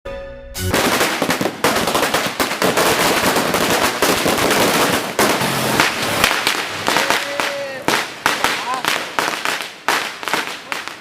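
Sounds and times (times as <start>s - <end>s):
firecracker string cracking bangs: 0.7s - 11.0s.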